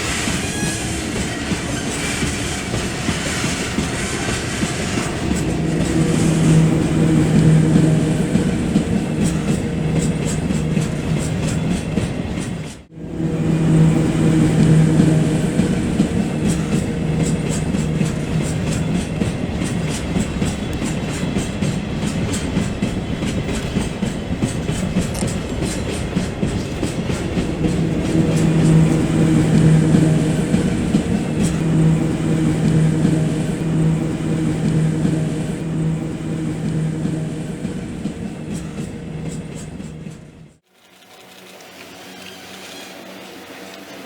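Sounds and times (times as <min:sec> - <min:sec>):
wheels clicking over rail joints: 0:16.4 - 0:28.3.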